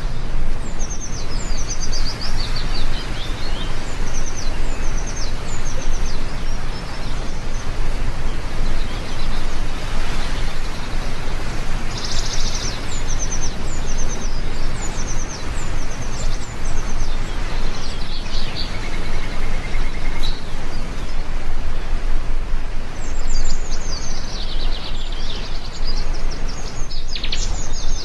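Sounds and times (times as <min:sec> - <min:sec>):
heavy rain falling: 0:00.0 - 0:18.4
small birds chirping and trilling: 0:00.0 - 0:28.0.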